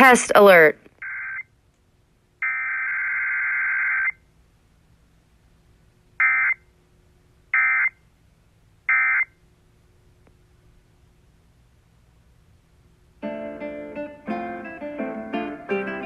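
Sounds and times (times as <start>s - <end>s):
buzzing alert data tones from radio: 7.6s - 8.0s.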